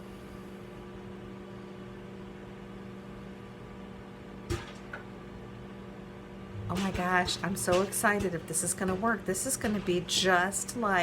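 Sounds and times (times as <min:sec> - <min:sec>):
microwave oven humming: 0:00.0 - 0:11.0.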